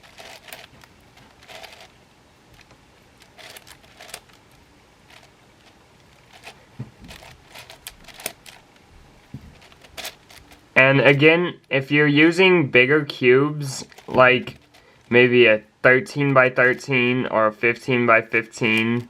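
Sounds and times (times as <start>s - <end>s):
puzzle cube plastic clicks: 0.0s - 8.8s, 13.8s - 15.1s.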